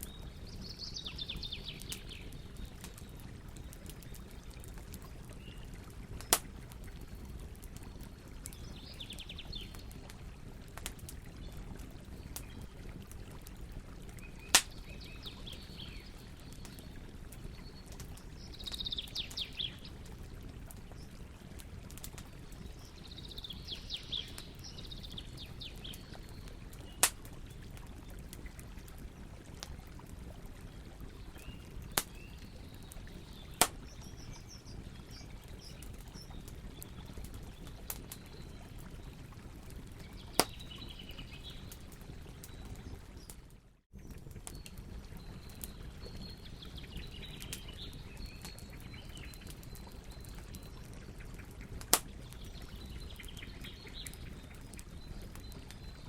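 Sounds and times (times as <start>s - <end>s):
campfire rumbling: 0.0s - 56.0s
birds chirping: 14.2s - 19.9s.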